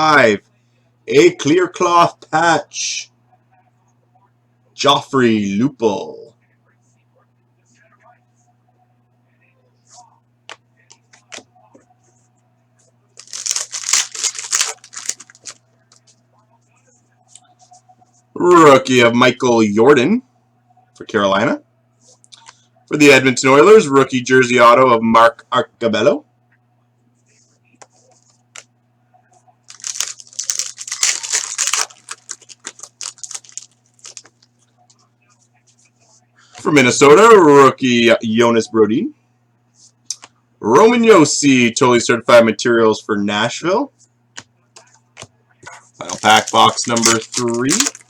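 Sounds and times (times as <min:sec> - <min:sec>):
foil wrapper crinkling and tearing: 0:13.2 - 0:15.6, 0:29.7 - 0:34.5, 0:46.0 - 0:48.0
cards clicking: 0:46.0 - 0:48.0.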